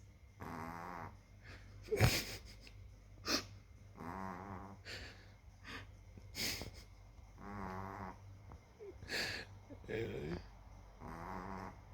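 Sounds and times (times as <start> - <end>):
dog snoring: 0.4 - 1.2, 4.0 - 5.1, 7.4 - 8.2, 8.8 - 11.9.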